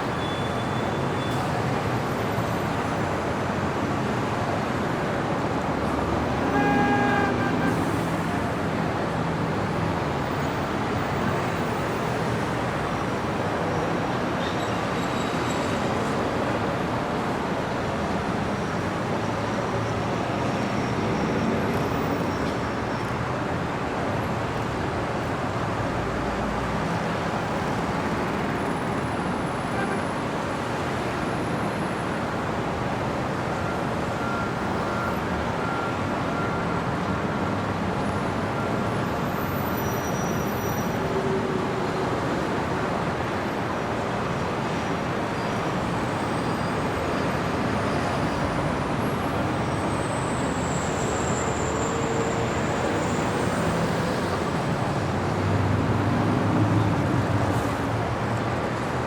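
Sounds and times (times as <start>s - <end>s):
city street traffic: 0.0s - 59.0s
faint high squeal: 0.1s - 2.1s, 38.6s - 41.4s, 49.7s - 54.4s.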